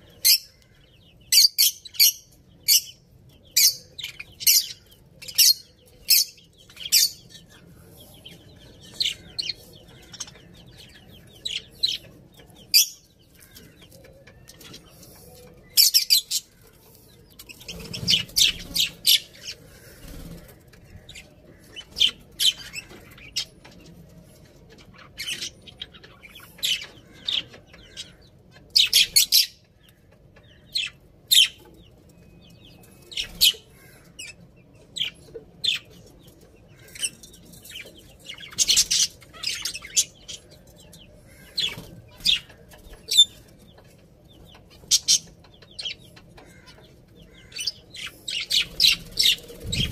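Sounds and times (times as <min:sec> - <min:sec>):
budgerigars chirping: 0:17.4 - 0:23.5, 0:24.9 - 0:29.7, 0:36.7 - 0:49.9.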